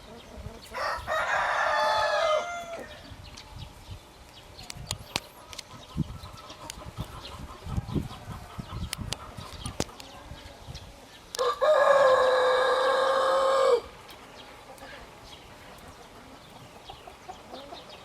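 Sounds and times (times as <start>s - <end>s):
rooster crowing: 0.7s - 3.1s, 11.4s - 14.0s.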